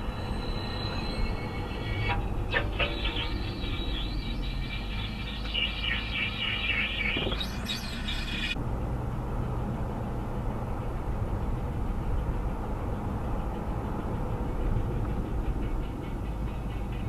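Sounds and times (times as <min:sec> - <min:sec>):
squealing wheel brake: 0:00.0 - 0:08.6
tyre and road noise: 0:00.0 - 0:17.0.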